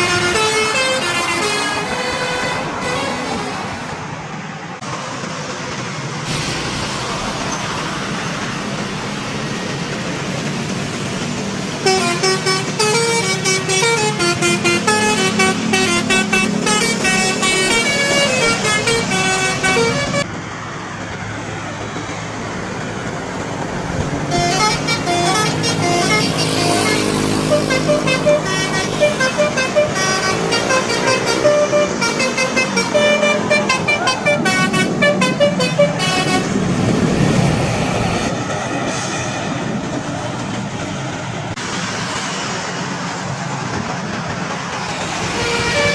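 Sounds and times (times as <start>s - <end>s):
multi-tone air horn playing notes: 0.0s - 3.2s, 11.8s - 20.3s, 24.3s - 36.6s, 45.2s - 45.9s
bus engine and road noise: 0.0s - 45.9s.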